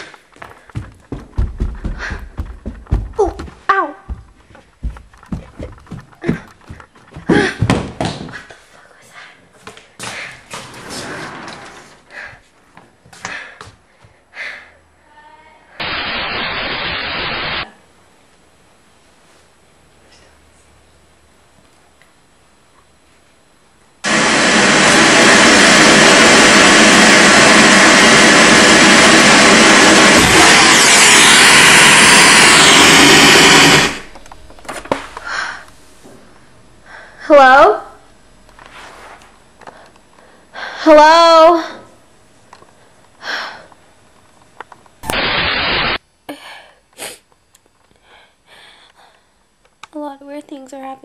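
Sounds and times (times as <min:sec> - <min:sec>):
loud static hiss: 0:15.7 - 0:22.7, 0:23.5 - 0:47.4
loud steady rushing noise: 0:24.1 - 0:35.8
person sniffing: 0:46.3 - 0:47.3.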